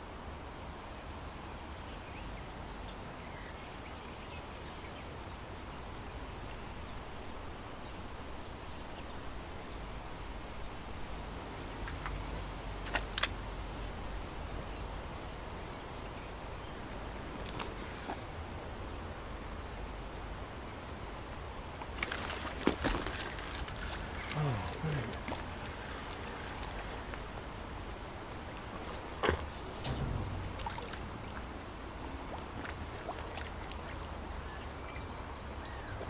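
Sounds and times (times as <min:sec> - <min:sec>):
brief hiss: 0:11.6 - 0:13.0
low outdoor rumble: 0:23.2 - 0:34.8.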